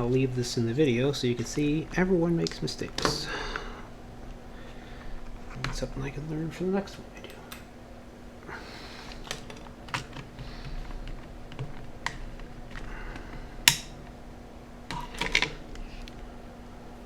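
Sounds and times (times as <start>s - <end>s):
small hard parts clicking: 9.0s - 14.1s.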